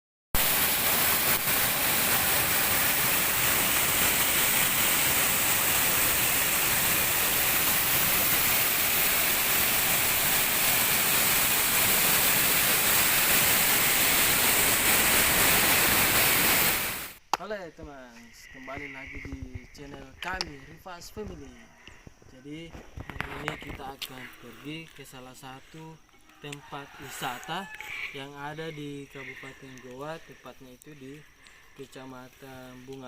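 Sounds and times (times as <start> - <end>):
waterfall rushing: 0.4 - 17.2.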